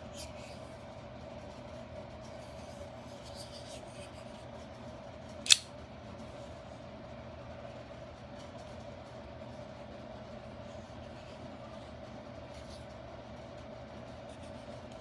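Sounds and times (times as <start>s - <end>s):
knife blade clicking into place: 5.5s - 5.7s.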